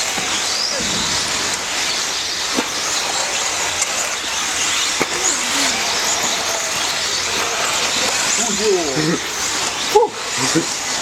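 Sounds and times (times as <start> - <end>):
sharp knocks: 0.0 - 6.1
rc buggy motors whining: 0.0 - 11.0.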